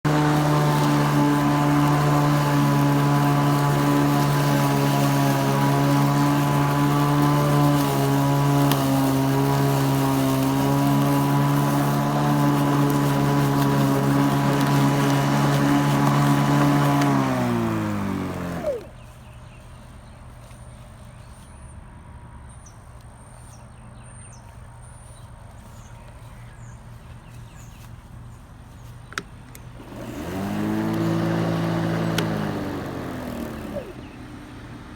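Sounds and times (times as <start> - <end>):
electric lawn mower motor whirring: 0.0 - 19.1, 29.2 - 34.9.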